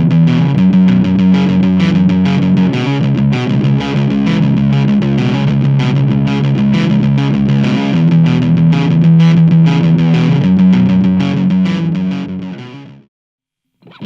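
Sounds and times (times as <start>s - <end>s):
distorted electric guitar chords: 0.0s - 13.1s.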